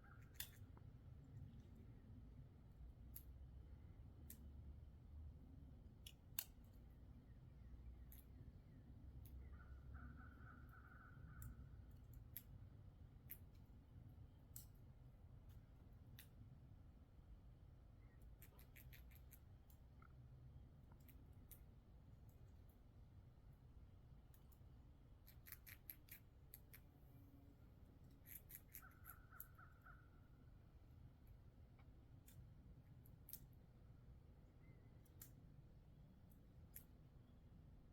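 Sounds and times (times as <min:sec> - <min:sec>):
squirrel gnawing nut shell: 0:18.3 - 0:20.1, 0:25.2 - 0:26.9, 0:28.0 - 0:29.7.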